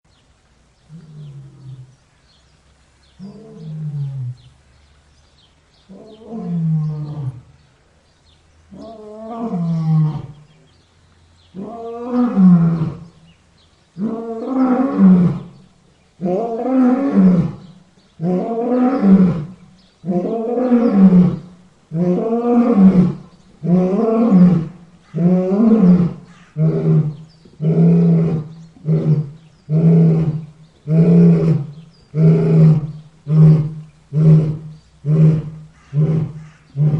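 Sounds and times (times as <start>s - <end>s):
lion roaring: 8.7s - 10.4s, 16.2s - 36.9s.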